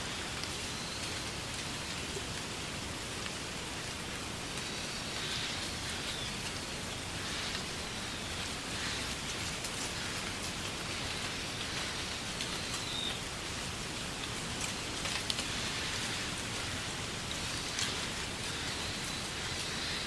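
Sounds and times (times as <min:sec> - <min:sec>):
wind rustling through reeds: 0:00.0 - 0:20.0.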